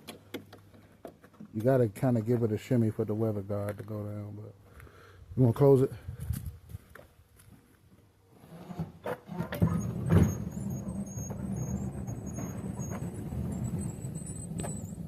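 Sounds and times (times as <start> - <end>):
door rolling rumble: 9.3 - 15.0
thin high squeal: 9.8 - 15.0.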